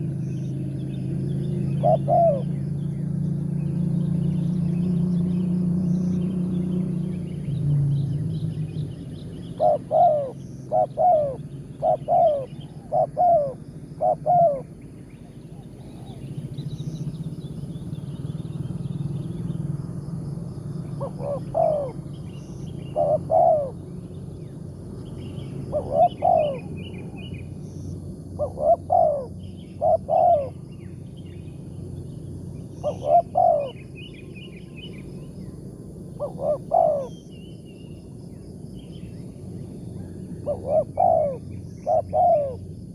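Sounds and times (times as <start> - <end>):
small birds chirping: 0.0 - 42.9
dove cooing: 1.6 - 2.7, 9.4 - 16.5, 20.9 - 23.9, 25.5 - 27.4, 28.4 - 30.7, 32.7 - 33.9, 36.2 - 37.2, 40.0 - 42.7.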